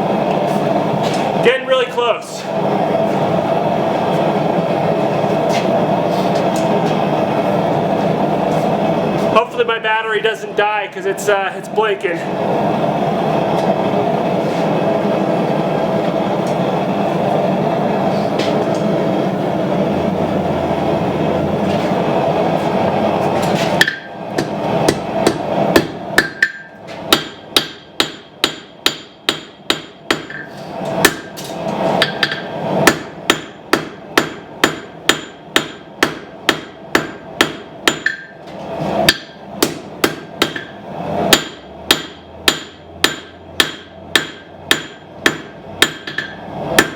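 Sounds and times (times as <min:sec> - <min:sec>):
forge roaring: 0:00.0 - 0:09.6, 0:12.0 - 0:26.3
hammer ringing on anvil: 0:25.8 - 0:30.5, 0:32.0 - 0:38.4, 0:41.4 - 0:46.9.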